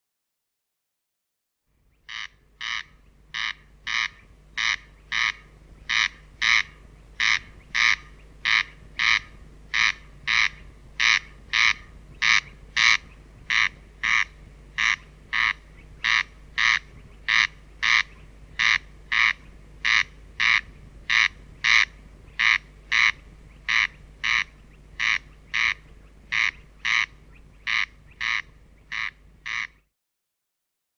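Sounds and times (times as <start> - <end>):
corncrake rasping call: 2.0 - 29.9.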